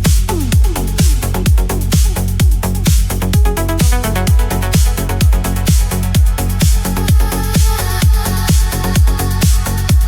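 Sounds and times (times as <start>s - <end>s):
electronic dance music: 0.0s - 10.0s.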